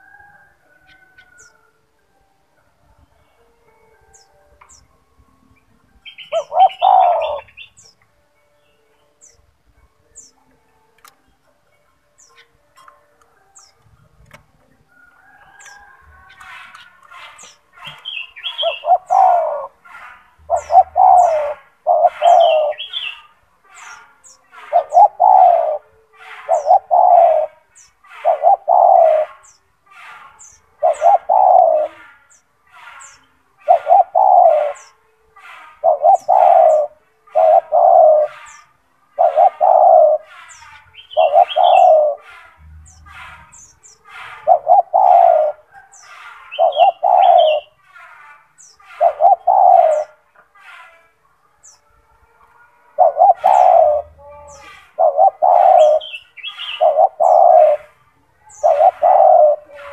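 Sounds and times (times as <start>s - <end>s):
dove cooing: 6.0s - 7.9s, 14.3s - 32.4s, 33.0s - 47.9s, 48.8s - 50.5s, 52.5s - 59.9s
small bird chirping: 20.4s - 25.8s.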